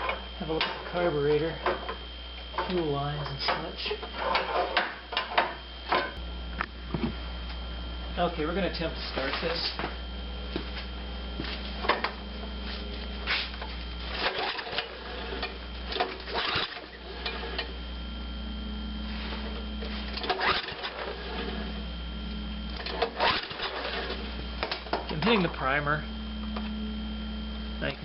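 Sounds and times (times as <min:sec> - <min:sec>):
engine cranking without firing: 0:14.2 - 0:17.7, 0:20.1 - 0:21.6, 0:22.7 - 0:24.9.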